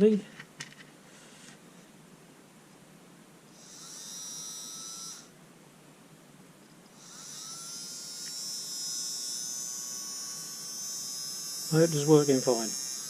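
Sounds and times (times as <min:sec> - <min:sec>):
electric motor whining: 0:07.0 - 0:13.0.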